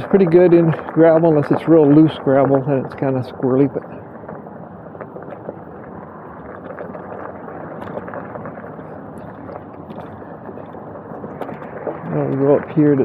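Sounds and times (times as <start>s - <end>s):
bike tyres crunching on gravel: 0.0s - 13.0s
small stones clicking: 4.0s - 12.8s.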